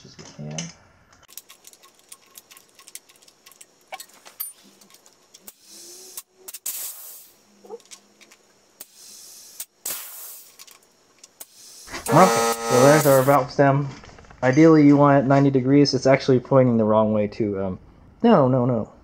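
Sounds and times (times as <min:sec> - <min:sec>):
short air hissing: 0:05.5 - 0:07.4, 0:08.8 - 0:10.7, 0:11.4 - 0:12.3.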